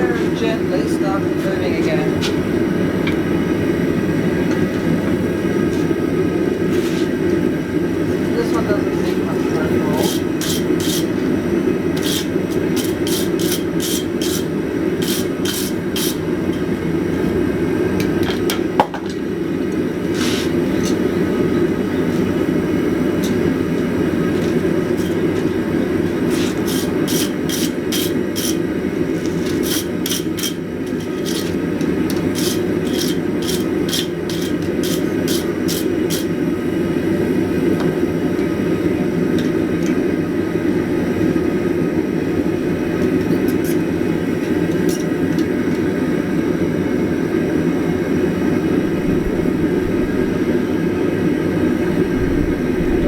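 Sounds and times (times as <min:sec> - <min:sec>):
forge roaring: 0:48.6 - 0:53.0.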